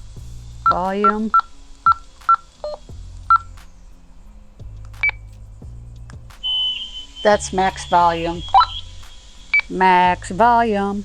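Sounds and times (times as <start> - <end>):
high steady tone: 6.0 - 10.8.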